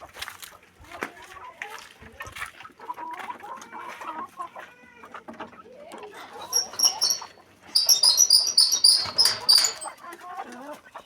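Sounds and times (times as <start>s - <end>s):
chickens calling: 2.6s - 11.0s.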